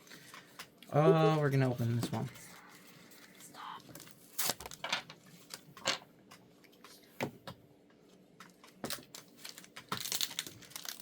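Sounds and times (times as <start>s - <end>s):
foil pack crinkling: 8.9s - 11.0s.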